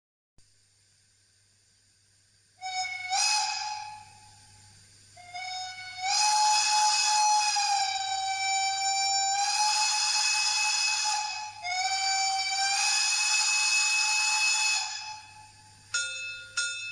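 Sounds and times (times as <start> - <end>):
model train steam whistle: 2.6 - 4.4, 5.2 - 15.9.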